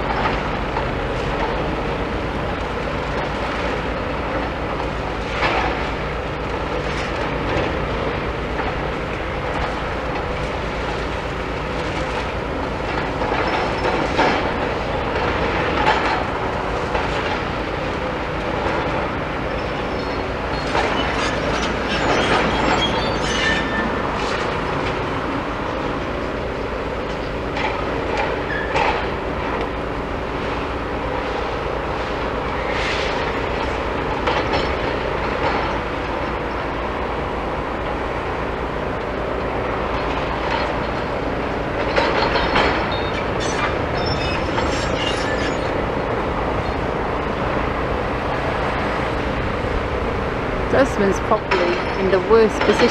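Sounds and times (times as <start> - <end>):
demolition machinery running: 0.0 - 52.9
metallic clanks and squeals: 13.2 - 14.4, 19.5 - 24.4, 28.2 - 29.1, 41.8 - 45.9.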